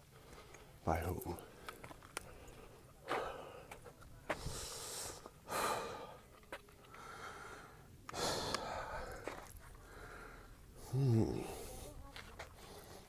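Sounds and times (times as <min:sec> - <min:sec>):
person breathing heavily: 0:01.4 - 0:06.3, 0:06.9 - 0:12.0.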